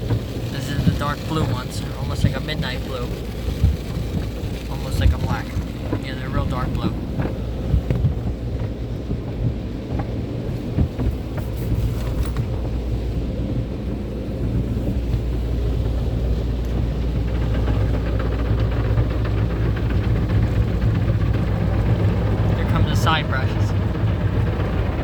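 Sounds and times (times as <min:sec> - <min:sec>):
car wash brushes scrubbing: 0:00.0 - 0:25.0
water patter: 0:00.0 - 0:25.0.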